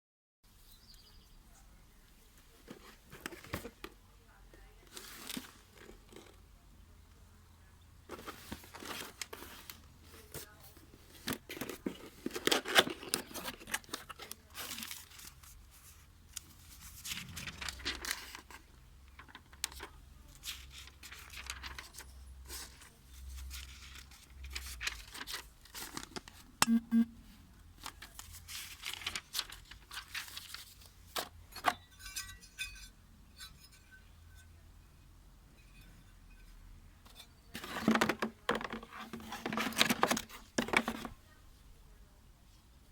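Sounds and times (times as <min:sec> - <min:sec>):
packaging rustling and tearing: 0:11.1 - 0:15.6, 0:16.4 - 0:18.6, 0:27.8 - 0:30.8, 0:37.6 - 0:41.1.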